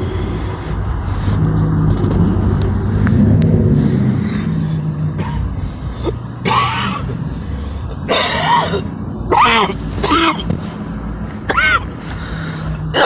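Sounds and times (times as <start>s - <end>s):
car engine idling: 0.0s - 13.0s
person coughing or clearing throat: 5.0s - 7.3s, 8.0s - 10.6s, 11.4s - 12.0s.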